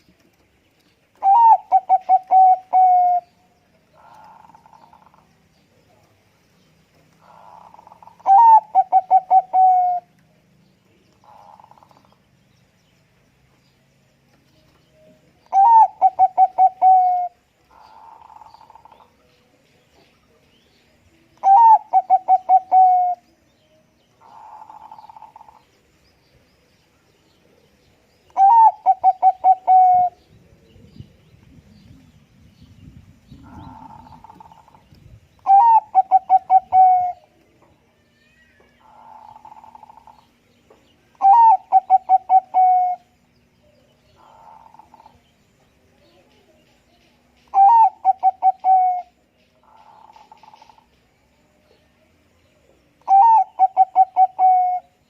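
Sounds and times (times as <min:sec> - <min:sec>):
soft fainter bird calls: 0:00.0 - 0:55.0
dove cooing: 0:01.2 - 0:03.3, 0:07.2 - 0:10.1, 0:15.5 - 0:19.1, 0:21.4 - 0:23.3, 0:28.4 - 0:30.7, 0:33.4 - 0:34.8, 0:35.4 - 0:37.4, 0:41.2 - 0:43.2, 0:44.2 - 0:45.2, 0:47.5 - 0:50.9, 0:53.1 - 0:55.0.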